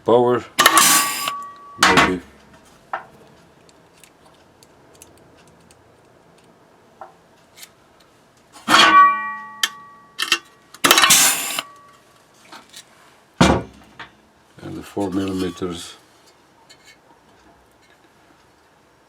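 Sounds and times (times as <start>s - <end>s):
rivet gun metallic clank: 0.6s - 2.3s, 8.6s - 11.9s.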